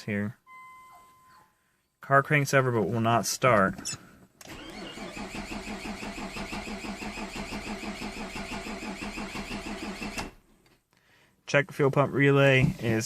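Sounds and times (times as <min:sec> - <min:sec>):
engine cranking on starter motor: 0:04.4 - 0:10.4.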